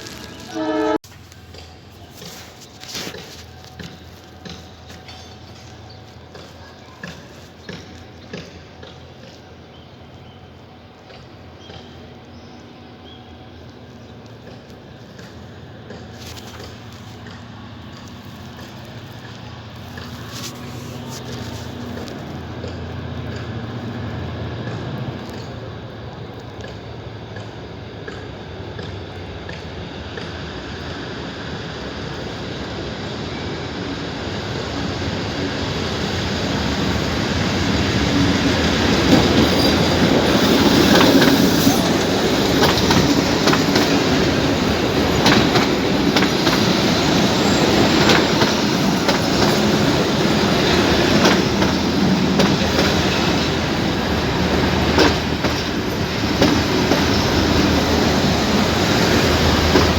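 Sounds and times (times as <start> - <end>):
train rumbling on rails: 0.0 - 59.9
wheel clacks over rail joints: 14.4 - 25.6, 37.7 - 59.9.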